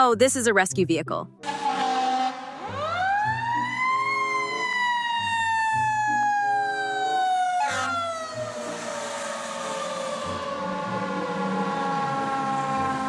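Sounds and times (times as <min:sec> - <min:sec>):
emergency vehicle siren wailing: 0:01.4 - 0:13.0.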